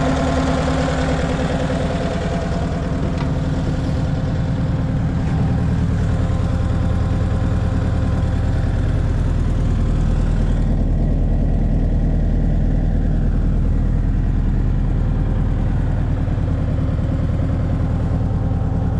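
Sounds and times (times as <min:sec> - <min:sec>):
diesel engine idling: 0:00.0 - 0:18.9.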